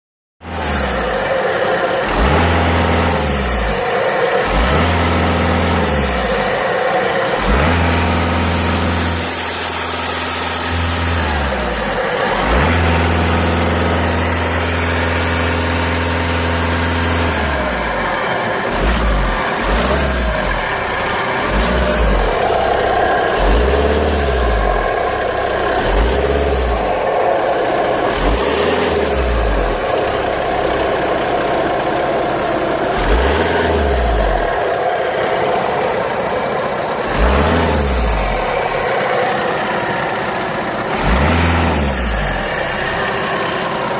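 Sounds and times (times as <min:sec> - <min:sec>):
diesel engine revving: 0:00.4 - 0:43.9.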